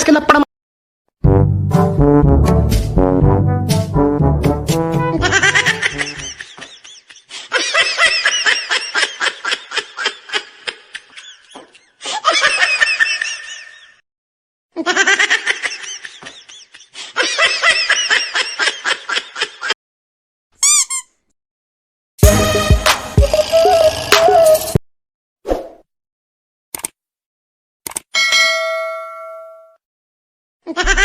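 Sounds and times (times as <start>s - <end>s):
laughter: 5.2s - 14.0s, 14.8s - 19.8s, 30.7s - 31.0s.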